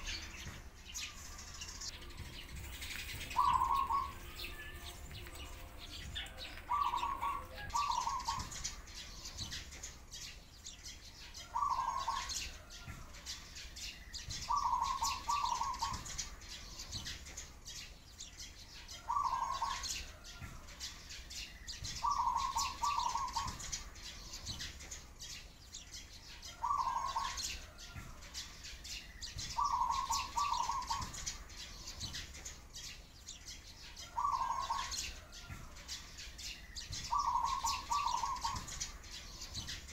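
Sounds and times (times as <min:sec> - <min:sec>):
sparrows chirping: 0:00.0 - 0:39.9
dove cooing: 0:02.2 - 0:08.6, 0:11.5 - 0:12.4, 0:14.5 - 0:16.1, 0:19.1 - 0:19.9, 0:22.0 - 0:23.6, 0:26.6 - 0:27.4, 0:29.6 - 0:31.2, 0:34.1 - 0:35.0, 0:37.1 - 0:38.7.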